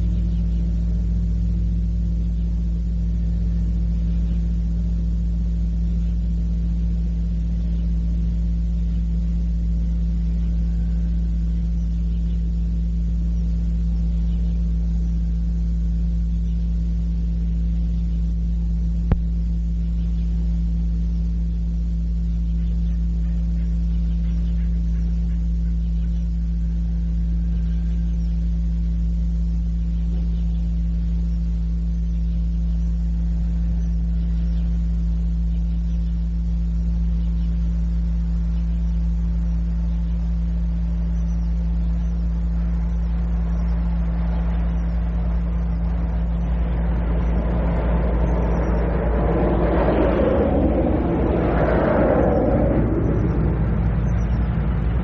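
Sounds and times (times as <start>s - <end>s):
low electrical hum: 0.0s - 55.0s
tape hiss: 0.0s - 55.0s.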